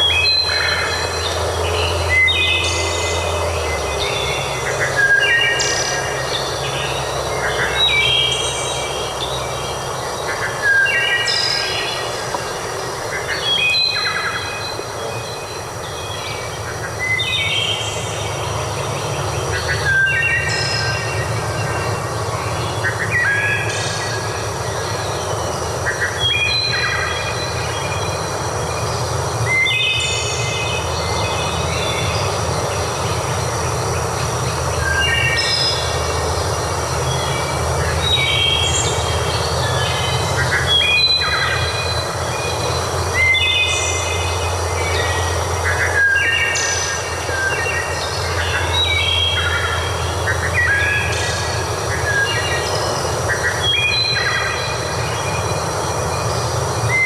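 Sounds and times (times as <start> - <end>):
birds singing: 0.0 - 57.0
flowing water: 0.0 - 57.0.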